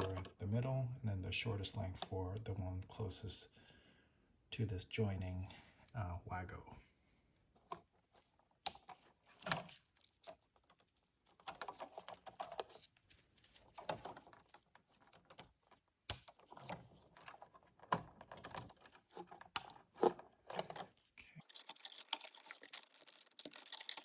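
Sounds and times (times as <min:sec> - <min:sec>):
wire rustling and scraping: 0:07.6 - 0:24.0.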